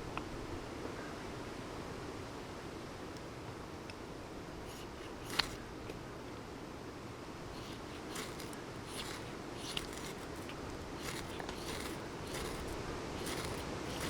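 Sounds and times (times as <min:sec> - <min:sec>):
short scraping strokes: 0:04.7 - 0:05.6, 0:07.5 - 0:14.0.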